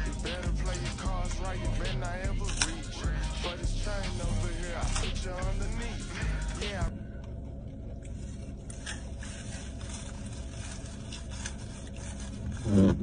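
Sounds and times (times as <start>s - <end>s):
steady low hum: 0.0s - 13.0s
utensil scraping a container: 8.2s - 13.0s.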